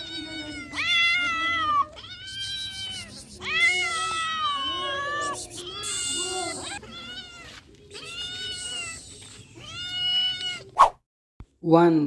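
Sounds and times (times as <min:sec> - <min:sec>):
cat meowing in long wails: 0:00.0 - 0:09.0.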